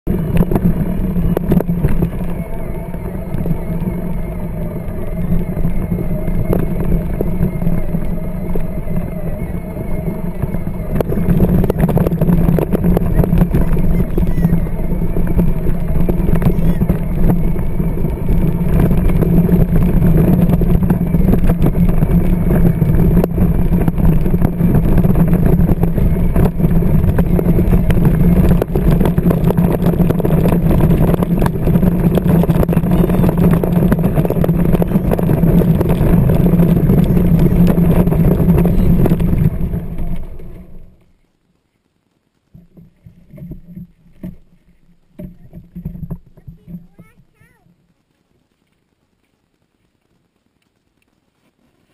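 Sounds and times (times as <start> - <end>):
wheels rolling: 0.0 - 51.9
toy tractor motor hum: 0.1 - 40.8.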